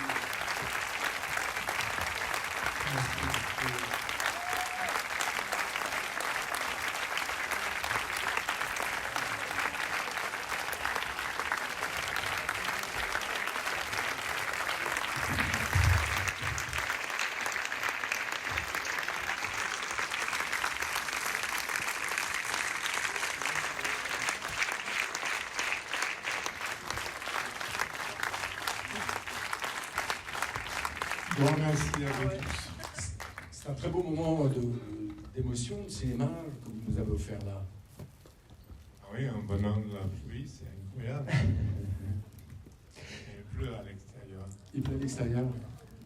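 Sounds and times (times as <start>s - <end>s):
audience applauding: 0.0s - 35.7s.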